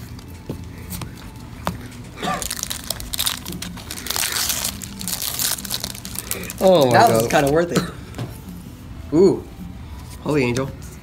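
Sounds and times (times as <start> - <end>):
foil wrappers crinkling: 0.8 - 7.7.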